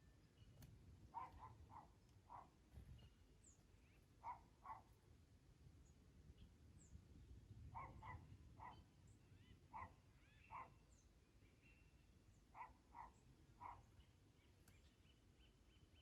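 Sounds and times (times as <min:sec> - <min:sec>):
dog barking faintly: 0:01.1 - 0:02.6
faint bird chirps: 0:07.8 - 0:16.0.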